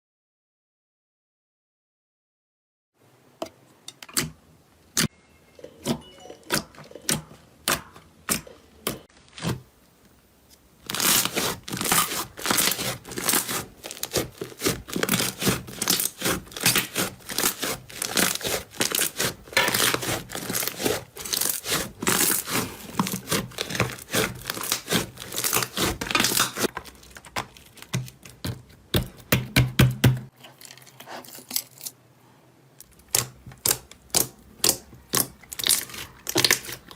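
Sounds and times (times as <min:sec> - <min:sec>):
slime clicking and popping: 0:32.9 - 0:36.8.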